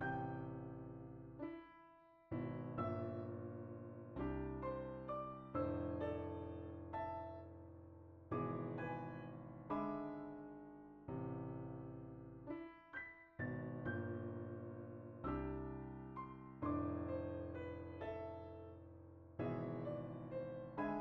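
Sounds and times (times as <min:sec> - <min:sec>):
electric piano chords: 0:19.4 - 0:21.0.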